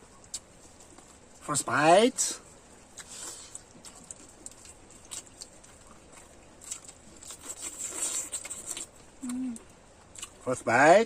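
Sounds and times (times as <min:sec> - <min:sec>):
wet chewing: 0:02.8 - 0:10.4
person humming mm: 0:09.2 - 0:09.6.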